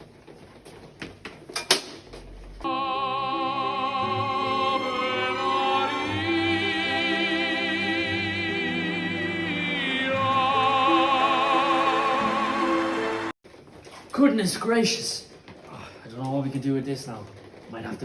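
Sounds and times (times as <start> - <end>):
operatic singing with vibrato: 2.6 - 13.4
classical accompaniment: 2.7 - 13.4.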